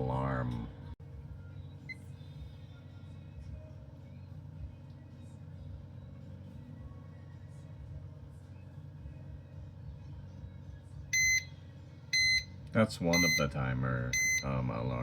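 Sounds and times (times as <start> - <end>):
kitchen timer beeping: 11.2 - 11.5, 12.1 - 12.5, 13.1 - 13.5, 14.1 - 14.6.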